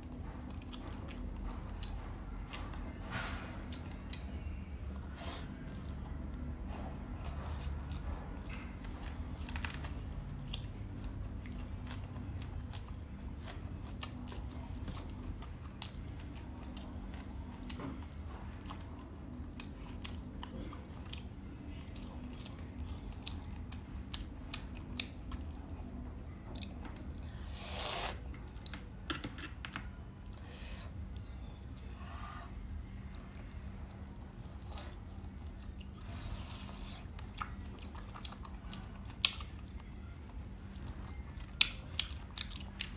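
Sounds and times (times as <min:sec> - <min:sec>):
low steady hum: 0:00.0 - 0:42.9
small clicks and crunches: 0:09.4 - 0:10.1.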